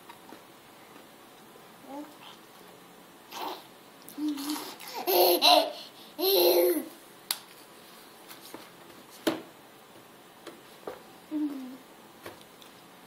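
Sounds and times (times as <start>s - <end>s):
child babbling: 1.8s - 2.4s, 4.2s - 6.9s, 11.3s - 11.8s.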